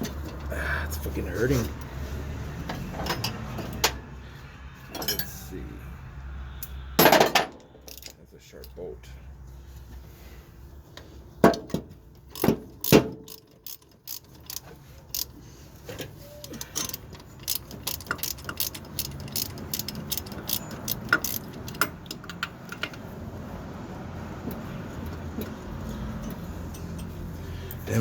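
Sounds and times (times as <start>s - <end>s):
metal clanks: 7.0s - 8.2s
ratchet wrench clicking: 7.8s - 8.8s, 12.1s - 15.4s, 16.1s - 23.0s.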